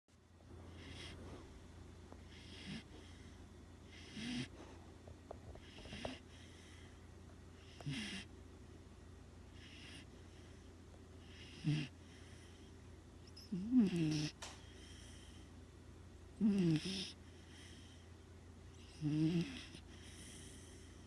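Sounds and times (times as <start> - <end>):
pet snoring: 2.3 - 4.5, 5.5 - 6.8, 7.6 - 8.3, 9.6 - 10.1, 11.2 - 12.6, 13.3 - 15.3, 16.4 - 18.0, 18.8 - 20.8.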